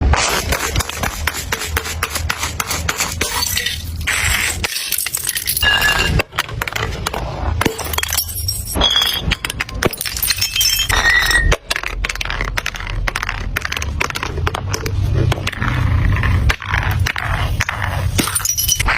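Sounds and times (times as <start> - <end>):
glass shards clinking: 3.2 - 4.0, 4.6 - 6.3, 7.6 - 11.6, 18.2 - 18.9
glass bottles crushing: 3.2 - 14.8, 17.7 - 18.9.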